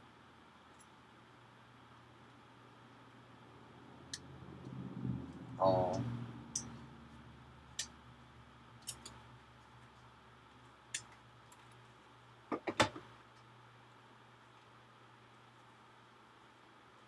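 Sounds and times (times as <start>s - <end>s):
small tools clicking and tapping: 8.8s - 9.2s.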